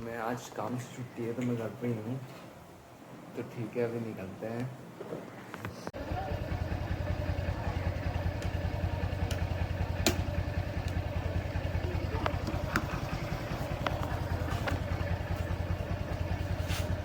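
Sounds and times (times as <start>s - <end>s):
motorcycle engine idling: 6.0s - 17.0s.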